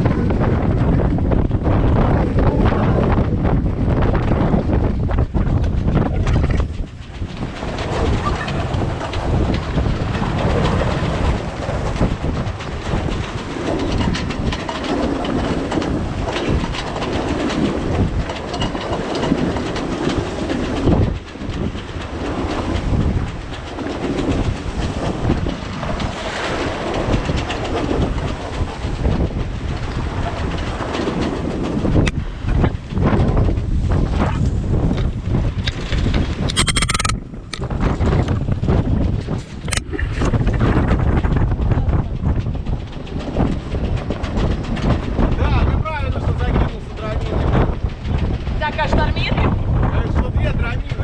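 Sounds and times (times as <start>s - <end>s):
sailing yacht rushing noise: 0.0s - 51.0s
wind buffeting microphone: 0.0s - 51.0s.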